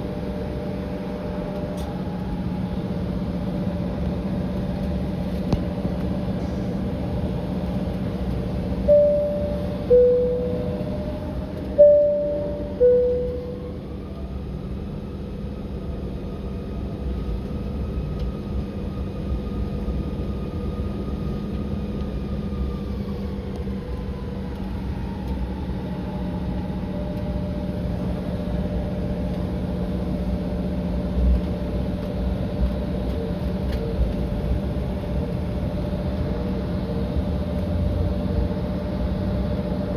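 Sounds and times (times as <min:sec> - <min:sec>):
jet cabin hum: 0:00.0 - 0:39.9
two-tone cabin chime: 0:08.8 - 0:14.0.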